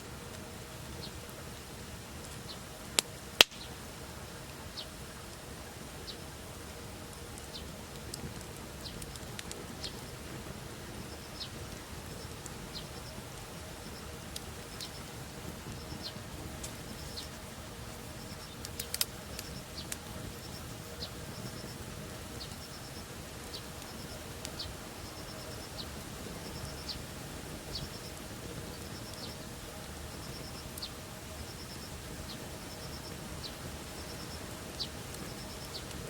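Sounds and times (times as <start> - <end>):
campfire crackling and popping: 0.0 - 36.0.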